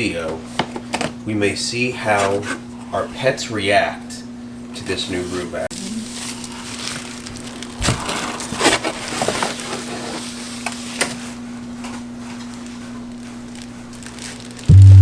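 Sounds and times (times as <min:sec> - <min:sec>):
packaging crackling and scraping: 0:06.0 - 0:14.7.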